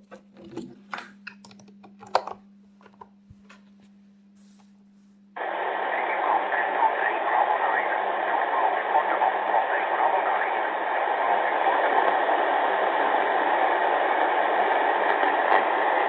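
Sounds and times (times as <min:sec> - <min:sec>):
low steady hum: 0:00.0 - 0:16.0
radio static hiss: 0:05.4 - 0:16.0
weak voice on radio: 0:05.4 - 0:16.0.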